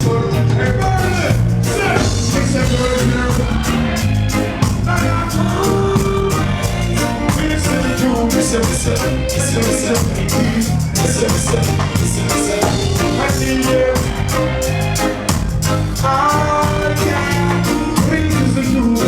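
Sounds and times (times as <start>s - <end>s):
heavy bass line: 0.0s - 19.0s
live reggae band: 0.0s - 19.0s
steady drum beat: 0.0s - 19.0s.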